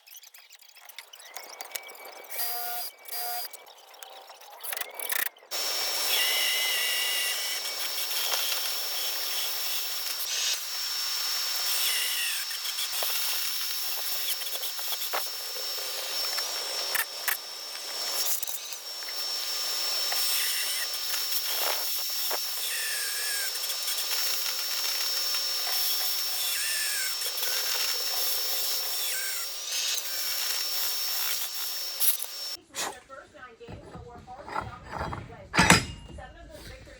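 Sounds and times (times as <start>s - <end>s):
electric drill whining: 4.7s - 32.6s.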